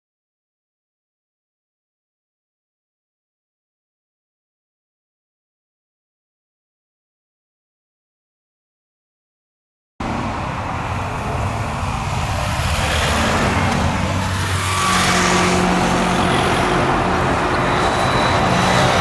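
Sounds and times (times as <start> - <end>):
jet engine rushing hum: 10.0 - 19.0.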